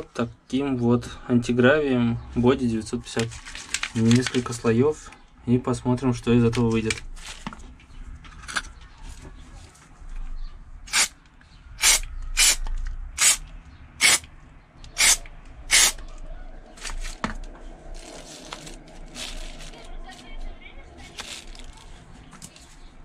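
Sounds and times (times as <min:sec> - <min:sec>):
aerosol can spraying: 0:10.9 - 0:11.1, 0:11.8 - 0:12.6, 0:13.2 - 0:13.4, 0:14.0 - 0:14.2, 0:15.0 - 0:16.0.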